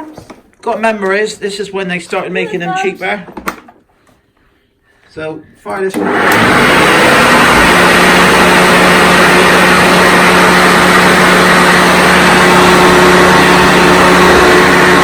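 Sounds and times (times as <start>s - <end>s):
upright vacuum cleaner running: 5.8s - 15.0s.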